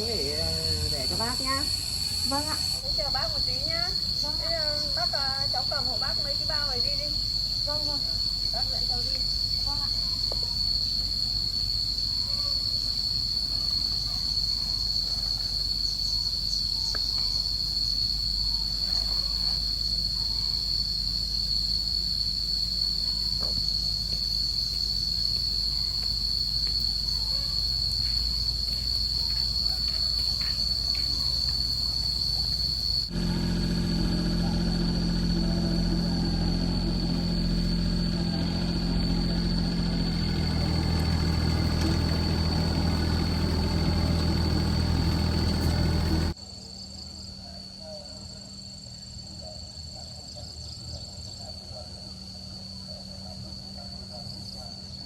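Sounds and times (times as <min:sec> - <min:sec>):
engine idling: 0:00.0 - 0:11.6, 0:22.0 - 0:46.4
insects droning: 0:00.0 - 0:55.0.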